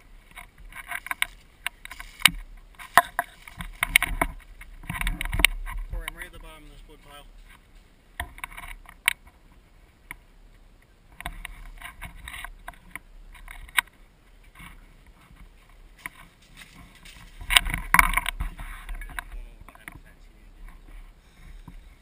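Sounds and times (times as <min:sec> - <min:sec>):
camera rustling and knocking: 0:00.0 - 0:06.5, 0:07.4 - 0:09.5, 0:11.1 - 0:22.0.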